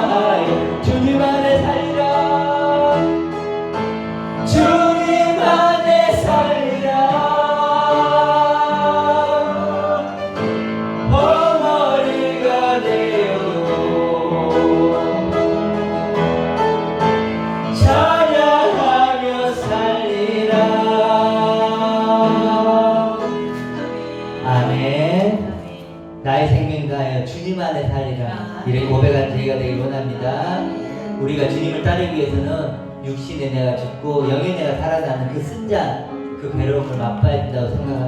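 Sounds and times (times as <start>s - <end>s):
voices singing worship song: 0.0s - 26.4s
instrumental accompaniment: 0.0s - 26.8s.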